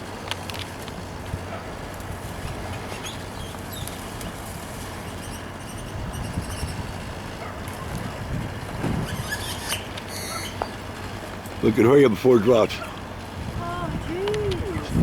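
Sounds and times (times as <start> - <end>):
low engine-like hum: 0.0 - 15.0
noisy outdoor background: 0.0 - 15.0
low thuds: 8.4 - 9.2
small birds chirping: 9.2 - 10.9.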